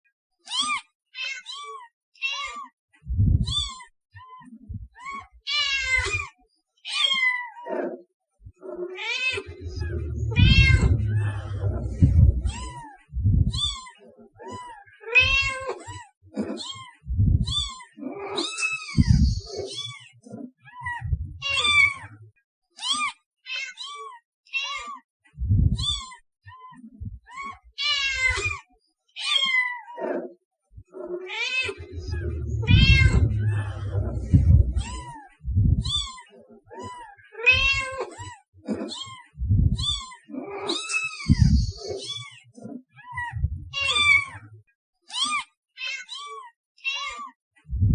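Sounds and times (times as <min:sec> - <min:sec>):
cat meowing: 0:00.5 - 0:02.7, 0:05.0 - 0:07.8, 0:08.8 - 0:20.1, 0:20.7 - 0:22.1, 0:22.8 - 0:25.0, 0:25.7 - 0:28.6, 0:29.2 - 0:30.0, 0:31.1 - 0:42.4, 0:43.0 - 0:44.4, 0:45.1 - 0:47.4
low bumps: 0:03.1 - 0:03.5, 0:09.5 - 0:13.6, 0:17.1 - 0:17.5, 0:19.0 - 0:19.4, 0:21.0 - 0:21.5, 0:25.4 - 0:25.8, 0:31.8 - 0:35.9, 0:39.4 - 0:39.8, 0:41.3 - 0:41.7, 0:43.3 - 0:43.8.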